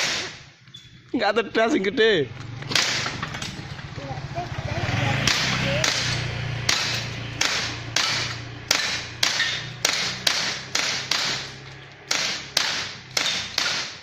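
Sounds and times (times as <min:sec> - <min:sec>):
airgun shots: 0:00.0 - 0:00.6, 0:02.7 - 0:03.3, 0:05.2 - 0:14.0.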